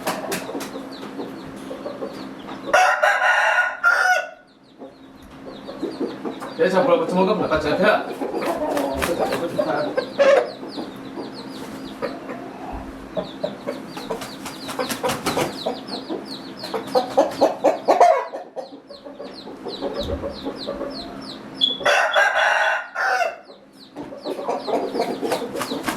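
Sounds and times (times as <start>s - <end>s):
chickens clucking: 0.0s - 25.9s
rooster crowing: 2.7s - 4.5s, 21.6s - 23.6s.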